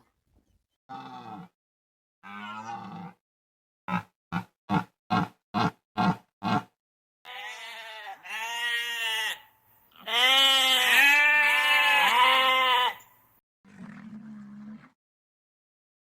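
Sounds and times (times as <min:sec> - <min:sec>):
animal bleating: 0:02.2 - 0:03.2, 0:07.3 - 0:13.1.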